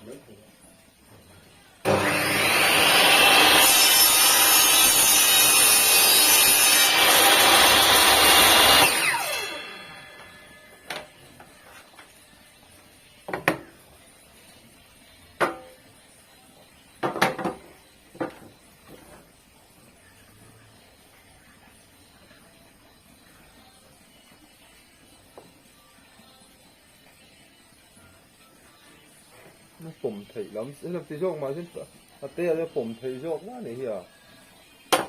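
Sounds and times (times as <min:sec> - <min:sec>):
saw cutting wood: 0:01.8 - 0:10.7
table saw whine: 0:01.8 - 0:11.8.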